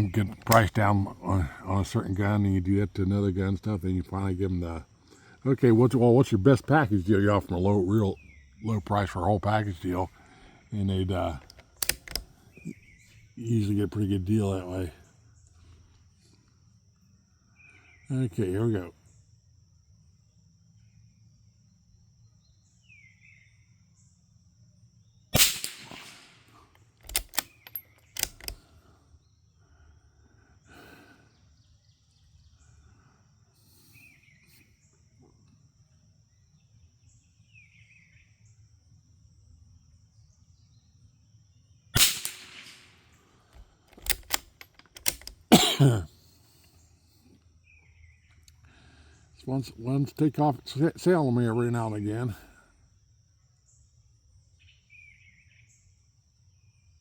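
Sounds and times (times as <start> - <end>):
rifle bolt clicks: 0.2 - 0.8, 11.4 - 12.4, 27.0 - 28.6, 42.0 - 42.9, 43.5 - 45.5
rifle shots: 25.4 - 27.6, 42.0 - 43.0.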